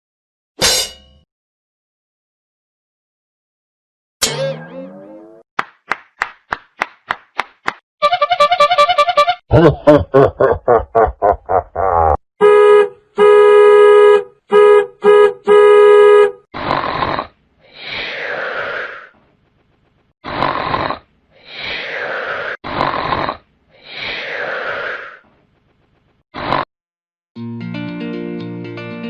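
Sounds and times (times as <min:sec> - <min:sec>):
buzzy horn honks: 0:08.0 - 0:09.4, 0:12.4 - 0:16.4
rough breathy rasps: 0:16.5 - 0:19.2, 0:20.2 - 0:25.4.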